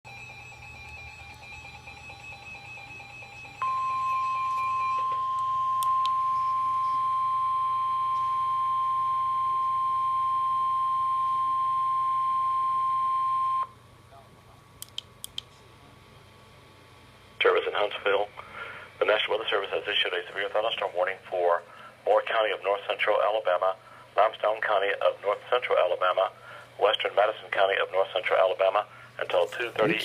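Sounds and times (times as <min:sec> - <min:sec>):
loud steady high beep: 0:00.1 - 0:13.7.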